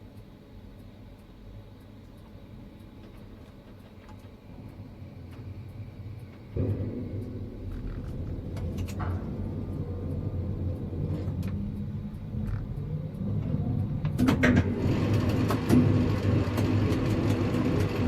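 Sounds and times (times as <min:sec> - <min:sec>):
crane machinery humming: 0:00.0 - 0:18.0
clicks: 0:05.3 - 0:16.8.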